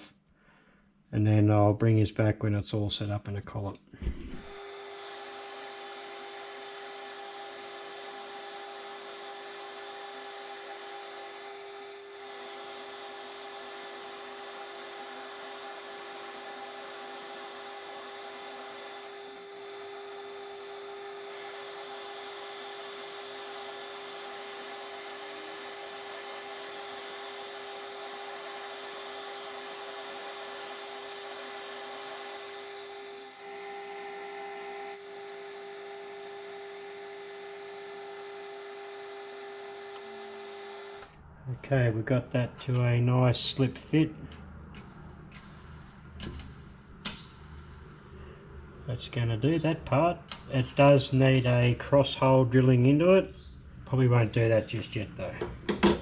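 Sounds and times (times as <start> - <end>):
metal lathe humming: 4.3 - 41.2.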